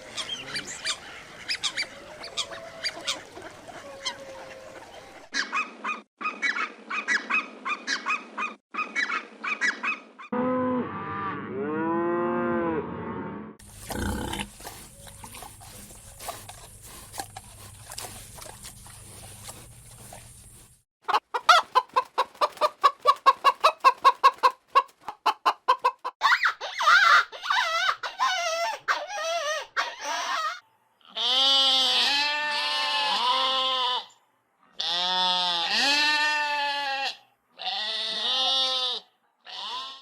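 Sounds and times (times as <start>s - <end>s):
chickens cackling: 0.1s - 5.6s, 19.0s - 30.6s
farm animal calls: 13.6s - 24.9s
chickens clucking: 13.7s - 26.2s.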